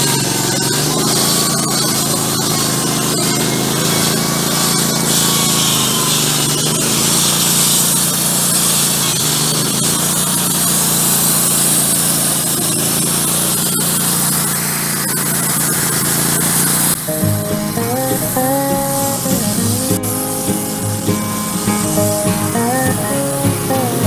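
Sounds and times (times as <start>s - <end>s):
band sawmill sawing log: 0.0s - 24.0s
acoustic guitar music: 16.1s - 24.0s.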